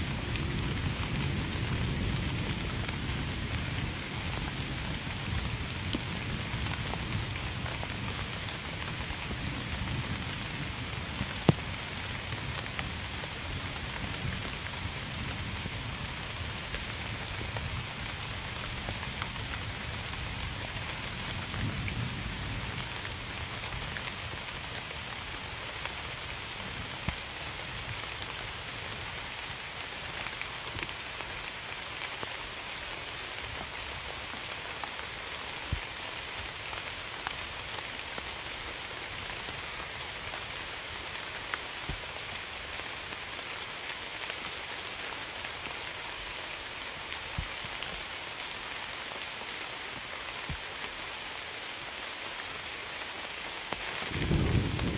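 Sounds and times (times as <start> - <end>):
raindrops striking sharply: 0.0 - 45.4, 53.4 - 54.9
steady rain: 0.0 - 54.9.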